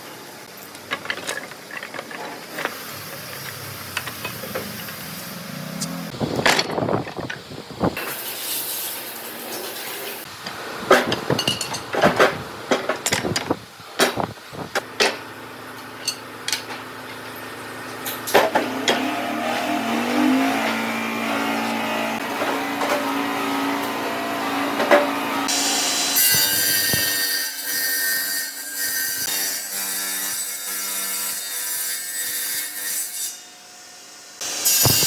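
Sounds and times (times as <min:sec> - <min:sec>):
power tool rasping wood: 0:18.6 - 0:28.0.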